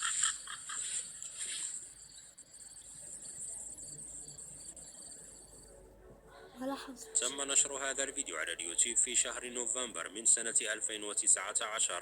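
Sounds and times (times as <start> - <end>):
crickets chirping: 0.0 - 6.4.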